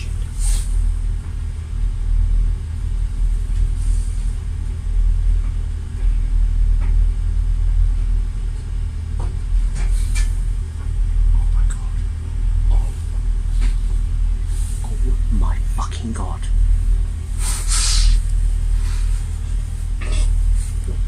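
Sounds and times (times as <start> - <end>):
train rumbling inside carriage: 0.0 - 21.0.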